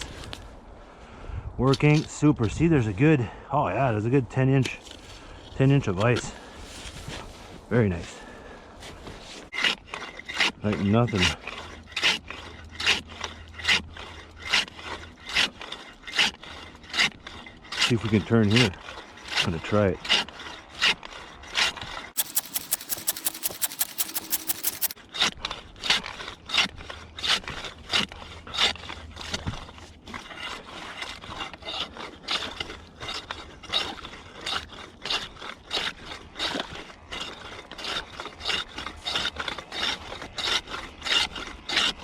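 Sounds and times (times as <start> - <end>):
ice saw rasping through ice: 6.0 - 42.0
fast even ticks: 22.2 - 25.0.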